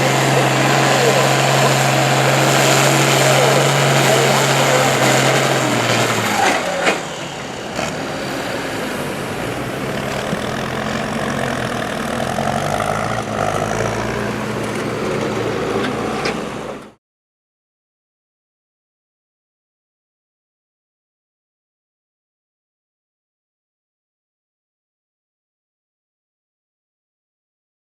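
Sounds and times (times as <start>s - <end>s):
tractor diesel engine running: 0.0s - 17.0s.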